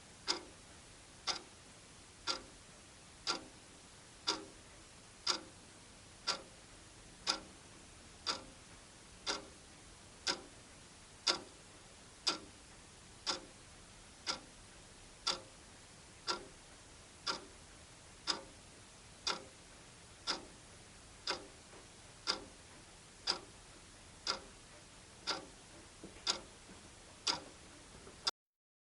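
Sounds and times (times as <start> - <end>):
wall clock ticking: 0.2 - 0.6, 1.2 - 1.5, 2.2 - 2.6, 3.2 - 4.6, 5.2 - 5.6, 6.2 - 6.6, 7.2 - 10.6, 11.2 - 13.6, 14.2 - 14.6, 15.2 - 15.6, 16.2 - 28.3.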